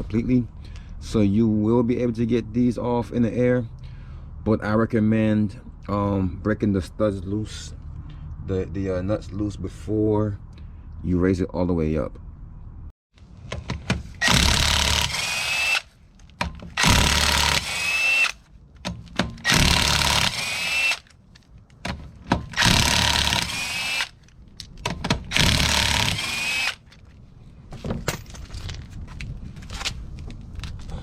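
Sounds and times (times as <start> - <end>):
impact wrench bursts: 14.2 - 15.9, 16.7 - 18.4, 19.3 - 21.1, 22.4 - 24.2, 25.3 - 26.9
metal clinks and handling: 27.8 - 29.0.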